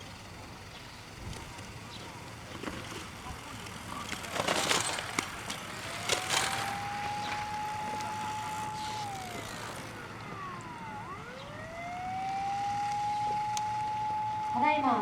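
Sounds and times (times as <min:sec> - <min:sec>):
fire engine siren wailing: 0:00.0 - 0:15.0
fainter higher siren: 0:04.3 - 0:15.0.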